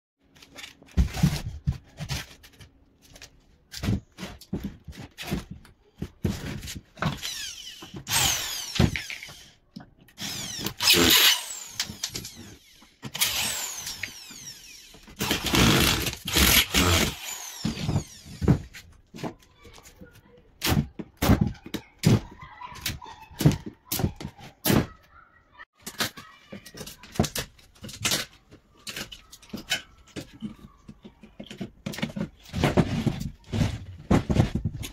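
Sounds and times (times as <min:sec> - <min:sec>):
power tool whirring: 0:07.1 - 0:09.6, 0:10.2 - 0:18.8.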